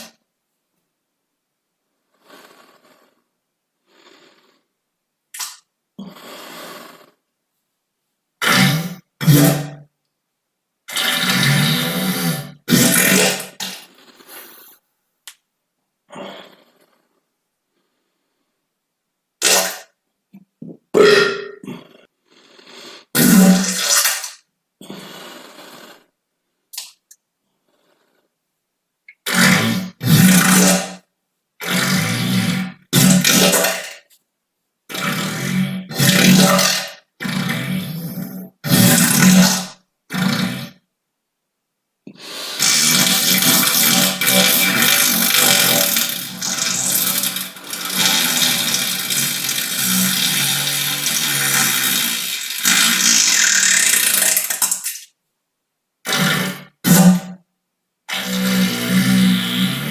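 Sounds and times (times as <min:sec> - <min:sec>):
farts: 0:00.0 - 0:00.2, 0:05.3 - 0:07.2, 0:08.4 - 0:09.9, 0:10.9 - 0:14.8, 0:19.4 - 0:26.1, 0:29.1 - 0:34.2, 0:34.9 - 0:40.9, 0:42.1 - 0:55.1, 0:56.0 - 0:57.5, 0:58.1 - 0:59.9.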